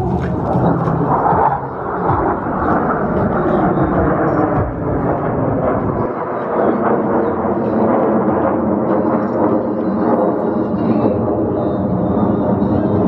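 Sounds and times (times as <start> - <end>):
people's voices: 0.0 - 8.2
aircraft engine rumble: 0.0 - 13.0.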